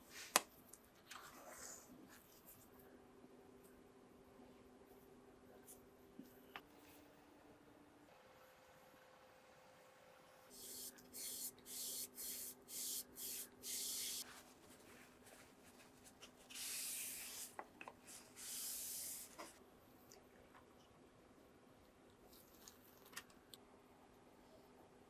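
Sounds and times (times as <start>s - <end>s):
aerosol spray hissing: 10.5s - 14.2s, 16.6s - 17.6s.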